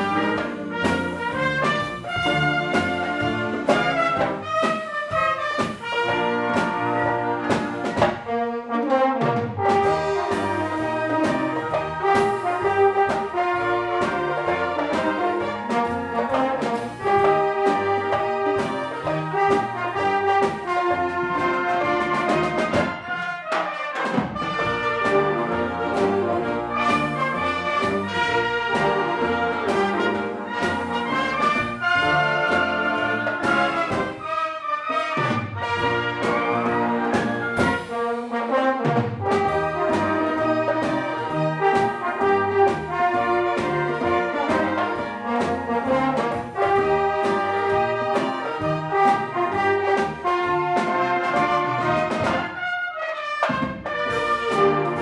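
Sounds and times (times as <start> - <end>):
trumpets and trombones: 0.0 - 55.0
wind band playing: 0.0 - 55.0.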